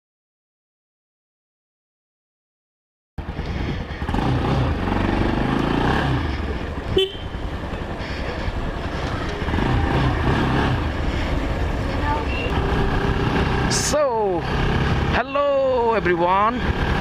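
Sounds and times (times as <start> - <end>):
motorcycle engine running: 3.2 - 17.0
vehicle horn beep: 6.9 - 7.4.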